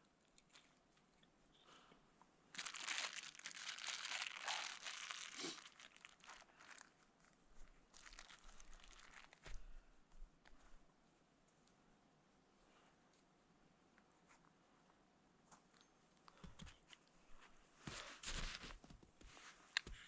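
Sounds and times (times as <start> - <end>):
dry tinder crumpled and torn: 2.5 - 9.5.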